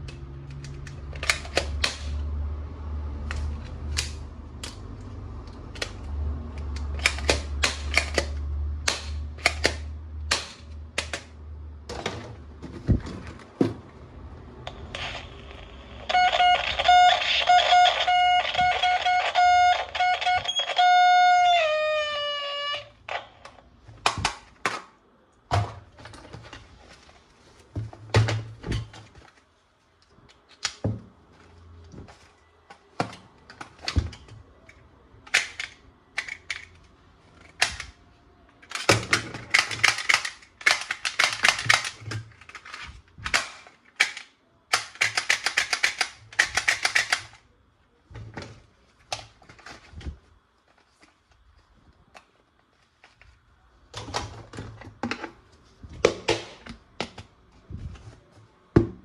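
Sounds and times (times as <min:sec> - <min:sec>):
plastic toy guns clicking: 0:00.1 - 0:02.2, 0:05.6 - 0:11.4, 0:35.2 - 0:36.8, 0:37.4 - 0:38.0, 0:38.6 - 0:47.4.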